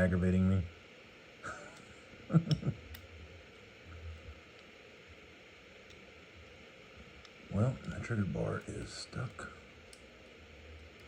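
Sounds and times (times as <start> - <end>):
faint clicks: 1.6 - 3.1, 7.2 - 10.1.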